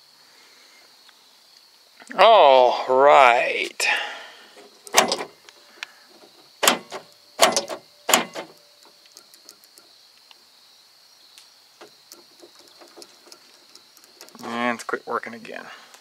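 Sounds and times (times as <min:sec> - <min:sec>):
door lock actuators clunking: 0:04.7 - 0:05.4, 0:06.6 - 0:08.6, 0:11.8 - 0:14.5
small clicks: 0:06.6 - 0:10.4, 0:12.1 - 0:14.5.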